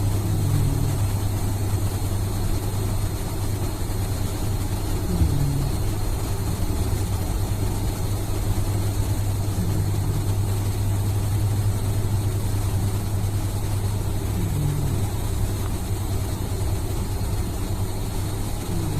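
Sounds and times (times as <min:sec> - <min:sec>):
snoring: 0:00.0 - 0:01.2, 0:05.1 - 0:06.0, 0:09.6 - 0:10.4, 0:14.3 - 0:15.8, 0:18.7 - 0:18.9.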